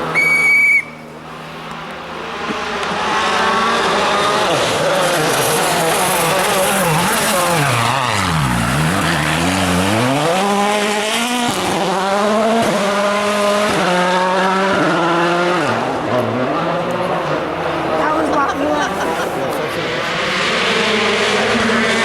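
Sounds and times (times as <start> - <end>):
rally car engine accelerating: 1.2 - 22.0.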